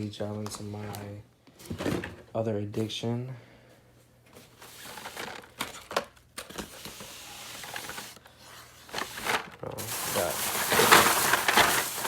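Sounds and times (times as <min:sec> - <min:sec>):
rustling and crinkling handling: 0:04.2 - 0:12.0.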